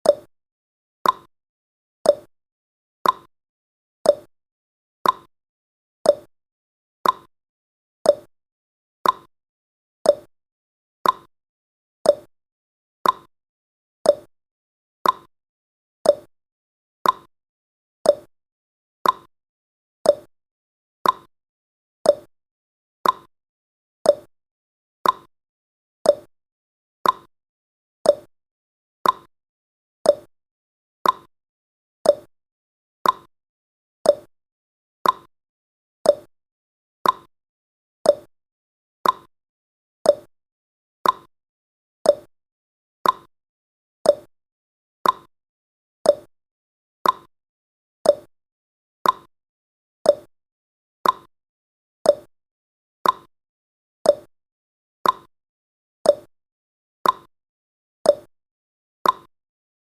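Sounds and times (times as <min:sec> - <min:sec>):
clock tick-tock: 0:00.0 - 0:00.3, 0:01.0 - 0:01.3, 0:02.1 - 0:02.3, 0:03.0 - 0:03.3, 0:04.1 - 0:04.3, 0:05.0 - 0:05.3, 0:06.1 - 0:06.3, 0:07.0 - 0:07.3, 0:08.1 - 0:08.3, 0:09.0 - 0:09.3, 0:10.1 - 0:10.3, 0:11.0 - 0:11.3, 0:12.1 - 0:12.3, 0:13.0 - 0:13.3, 0:14.0 - 0:14.3, 0:15.0 - 0:15.3, 0:16.0 - 0:16.3, 0:17.0 - 0:17.3, 0:18.1 - 0:18.3, 0:19.0 - 0:19.3, 0:20.0 - 0:20.3, 0:21.0 - 0:21.3, 0:22.0 - 0:22.3, 0:23.0 - 0:23.3, 0:24.0 - 0:24.3, 0:25.0 - 0:25.3, 0:26.0 - 0:26.3, 0:27.0 - 0:27.3, 0:28.0 - 0:28.3, 0:29.0 - 0:29.3, 0:30.0 - 0:30.3, 0:31.0 - 0:31.3, 0:32.0 - 0:32.3, 0:33.0 - 0:33.3, 0:34.0 - 0:34.3, 0:35.0 - 0:35.3, 0:36.0 - 0:36.3, 0:37.0 - 0:37.3, 0:38.0 - 0:38.3, 0:39.0 - 0:39.3, 0:40.0 - 0:40.3, 0:41.0 - 0:41.3, 0:42.0 - 0:42.3, 0:43.0 - 0:43.3, 0:44.0 - 0:44.3, 0:45.0 - 0:45.3, 0:46.0 - 0:46.3, 0:47.0 - 0:47.3, 0:48.0 - 0:48.3, 0:49.0 - 0:49.3, 0:50.1 - 0:50.3, 0:51.0 - 0:51.3, 0:52.1 - 0:52.3, 0:53.0 - 0:53.3, 0:54.1 - 0:54.3, 0:55.0 - 0:55.3, 0:56.1 - 0:56.3, 0:57.0 - 0:57.3, 0:58.1 - 0:58.3, 0:59.0 - 0:59.3.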